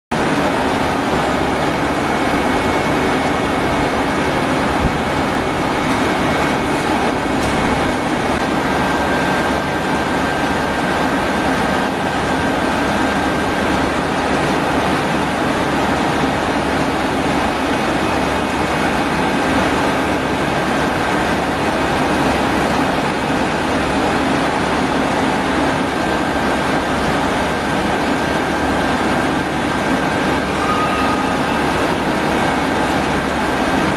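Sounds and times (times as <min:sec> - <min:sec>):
machine running with low hum: 0:00.2 - 0:33.9
faint high whines: 0:30.0 - 0:33.4.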